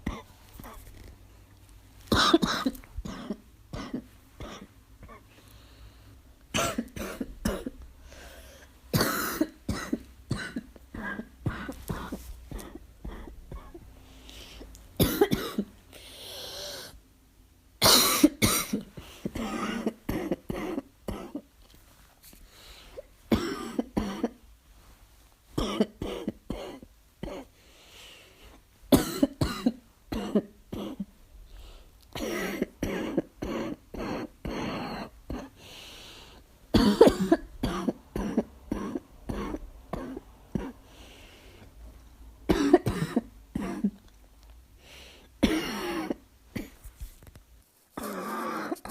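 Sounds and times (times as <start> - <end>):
person coughing: 0.0 - 0.9, 2.1 - 5.3, 6.5 - 7.8, 8.9 - 13.8, 15.0 - 15.8, 17.8 - 21.5, 23.3 - 24.4, 25.6 - 27.6, 28.9 - 31.1, 32.2 - 35.6, 36.7 - 40.8, 42.5 - 44.0, 45.4 - 46.8, 48.0 - 48.9.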